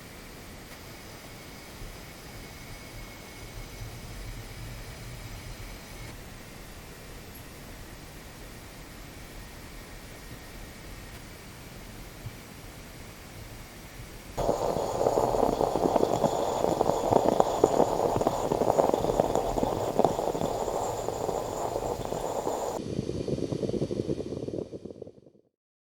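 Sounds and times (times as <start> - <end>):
moka pot gurgling and sputtering: 14.4 - 22.8.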